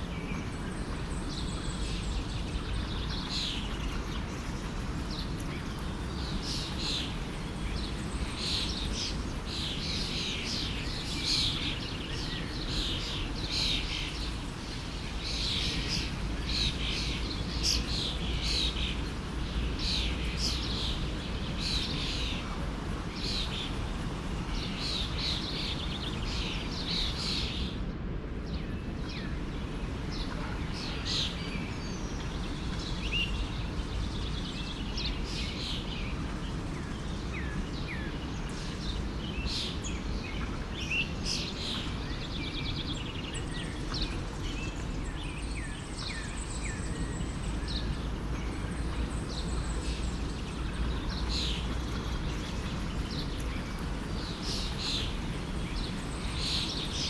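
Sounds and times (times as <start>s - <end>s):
songbirds chirping and whistling: 0.0s - 27.8s, 28.5s - 57.0s
stream rushing: 14.6s - 27.5s, 28.8s - 57.0s.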